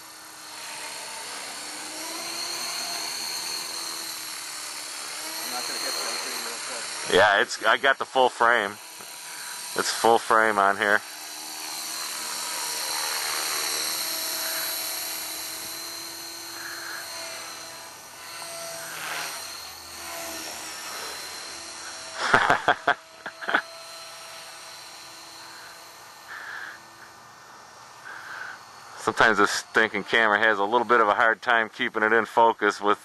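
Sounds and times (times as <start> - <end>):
model helicopter rotor whine: 0.0 - 33.0.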